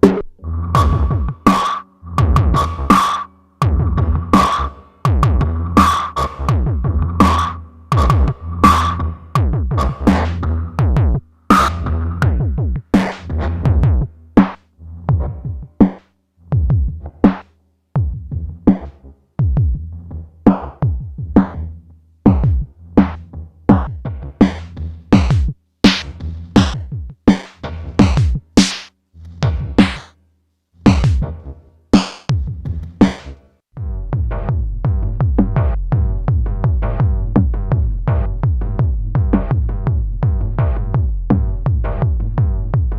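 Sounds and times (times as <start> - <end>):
low bass tone: 0.0 - 2.9, 3.6 - 14.2, 14.8 - 15.8, 33.8 - 42.9
drum machine percussion: 0.0 - 19.9, 20.5 - 21.7, 22.3 - 30.2, 30.8 - 31.4, 32.0 - 42.9.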